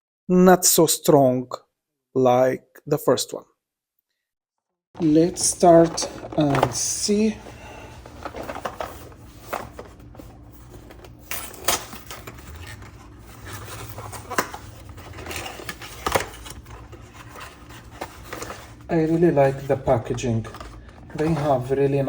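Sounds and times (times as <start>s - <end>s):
low steady hum: 5.0s - 22.0s.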